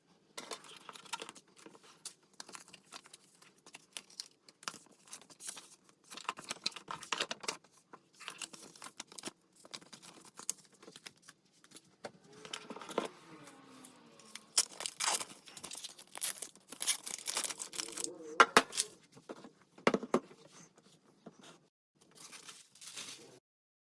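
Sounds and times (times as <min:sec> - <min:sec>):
paper tearing and crinkling: 0:08.2 - 0:19.0.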